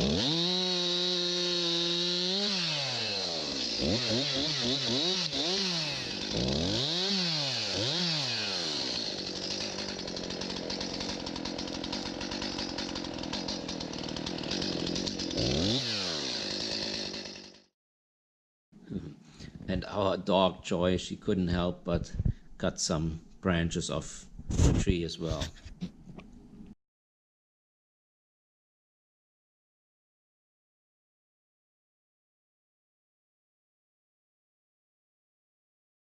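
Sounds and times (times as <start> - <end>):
chainsaw engine revving: 0.0 - 17.7.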